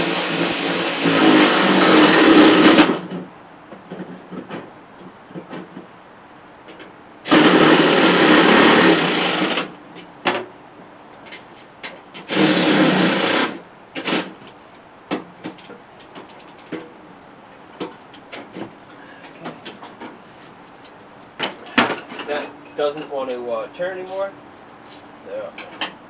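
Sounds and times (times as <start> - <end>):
power driver running: 7.3 - 9.7, 12.3 - 14.2.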